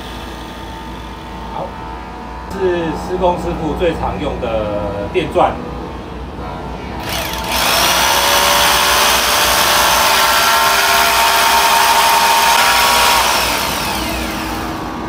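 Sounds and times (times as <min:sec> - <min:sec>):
electric drill whining: 0:07.0 - 0:15.0.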